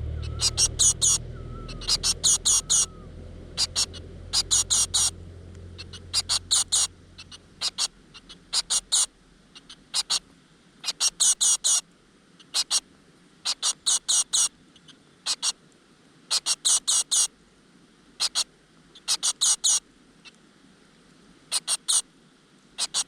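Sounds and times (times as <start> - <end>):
nestlings squeaking: 0.0 - 5.2, 5.8 - 10.2.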